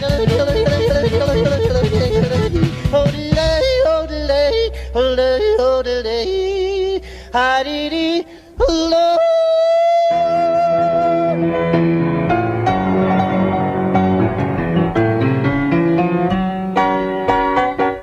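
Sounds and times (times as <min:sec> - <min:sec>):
country band playing: 0:00.0 - 0:06.9, 0:10.2 - 0:17.9
person singing yodel-like: 0:00.0 - 0:11.5.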